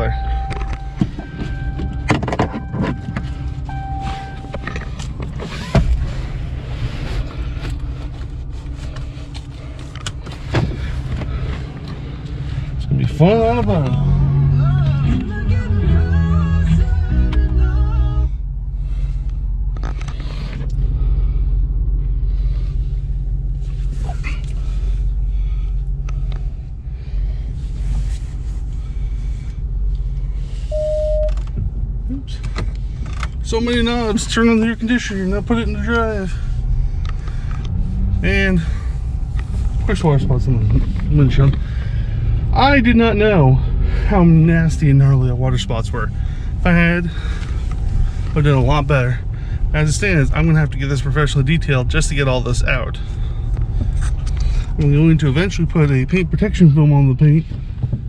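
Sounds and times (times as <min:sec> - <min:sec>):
truck engine running: 0:00.0 - 0:58.0
steady electronic tone: 0:30.7 - 0:31.4.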